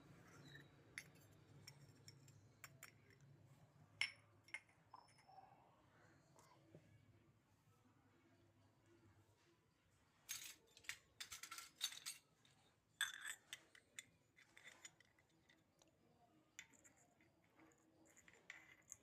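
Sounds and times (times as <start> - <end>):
clinks of small toy pieces: 10.3 - 12.3, 13.0 - 15.6.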